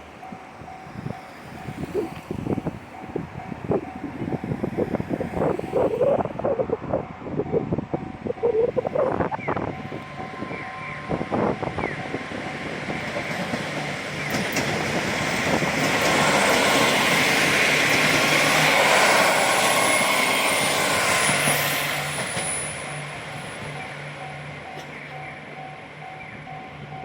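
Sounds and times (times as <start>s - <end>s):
railcar running noise: 0.0s - 27.0s
train wheel clacks: 11.7s - 27.0s.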